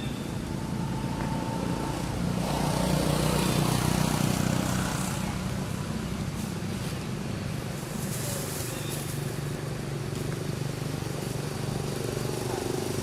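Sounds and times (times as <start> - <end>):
vehicle engine passing by: 0.3 - 7.1.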